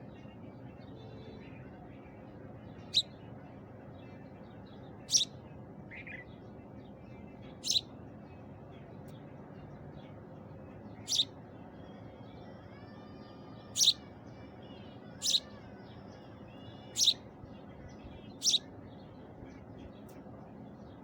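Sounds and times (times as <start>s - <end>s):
bird chirping: 2.7s - 3.2s, 4.1s - 6.4s, 7.5s - 7.9s, 10.9s - 11.9s, 13.7s - 14.0s, 15.1s - 17.2s, 18.0s - 19.2s
faint bird calls: 5.0s - 5.3s, 7.6s - 7.9s, 11.0s - 18.7s.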